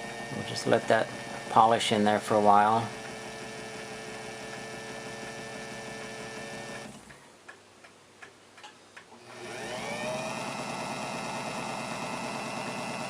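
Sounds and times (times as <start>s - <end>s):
small electric motor spinning: 9.3s - 13.0s.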